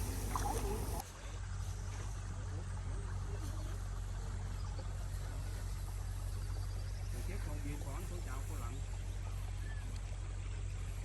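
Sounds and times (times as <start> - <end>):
faint voices: 0.0 - 5.9.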